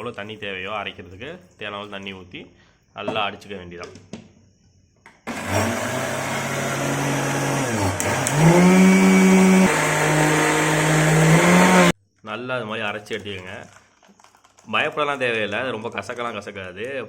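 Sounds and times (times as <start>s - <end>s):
mixer grinder motor running: 5.3s - 12.0s.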